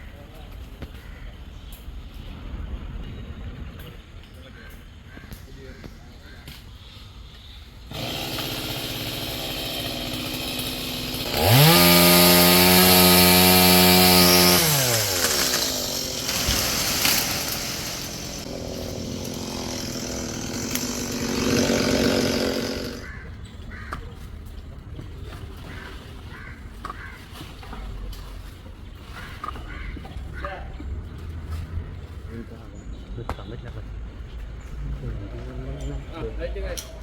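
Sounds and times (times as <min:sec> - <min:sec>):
two-stroke chainsaw revving: 0:07.9 - 0:23.1.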